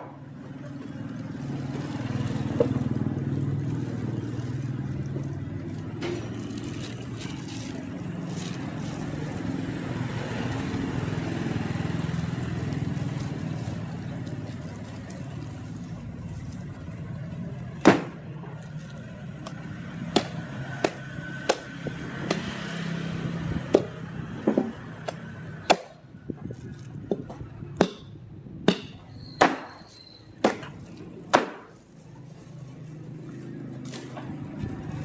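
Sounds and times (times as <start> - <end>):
cleaver chopping meat: 17.8 - 18.3, 19.4 - 26.0, 27.8 - 31.8.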